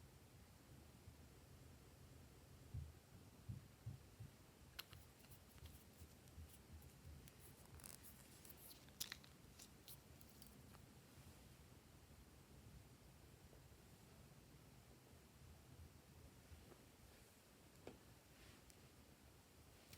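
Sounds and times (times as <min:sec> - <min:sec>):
slime clicks and crackles: 0:06.8 - 0:10.8.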